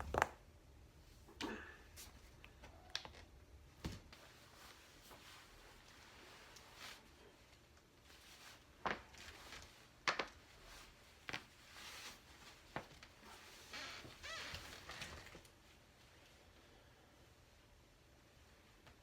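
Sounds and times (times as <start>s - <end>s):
spinal joints cracking: 0.0s - 0.4s
rustling of body movement: 3.7s - 16.4s.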